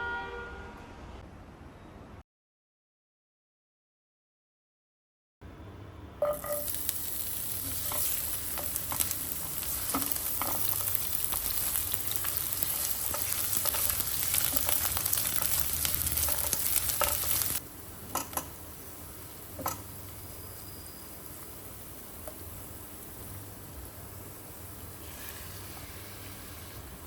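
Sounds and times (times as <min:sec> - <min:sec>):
food sizzling in hot oil: 0:06.2 - 0:27.0.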